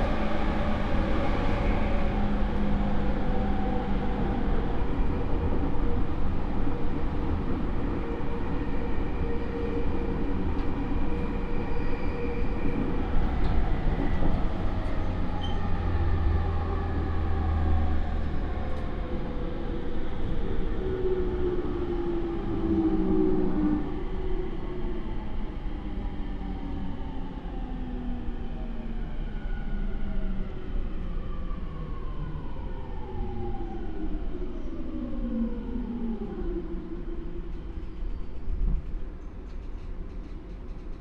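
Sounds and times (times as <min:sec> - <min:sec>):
train wheels rumbling on rail: 0:00.0 - 0:27.2, 0:36.9 - 0:41.0.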